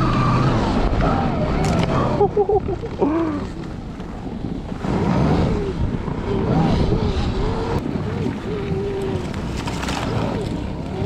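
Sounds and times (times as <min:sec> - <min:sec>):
track rumbling through snow: 0:00.0 - 0:11.0.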